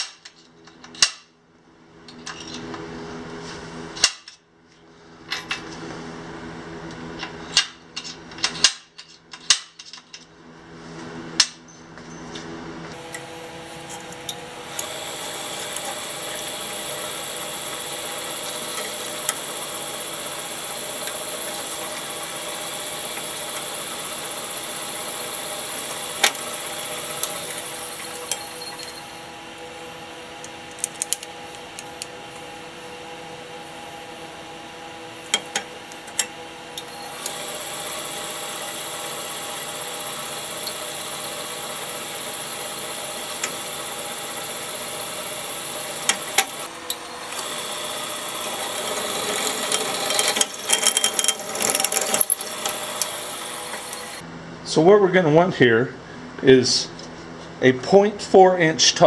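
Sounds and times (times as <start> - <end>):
power tool motor whining: 13.0 - 54.2.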